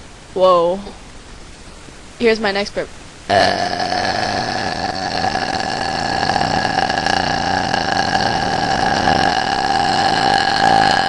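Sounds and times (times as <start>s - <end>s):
girl burping: 3.3s - 11.0s.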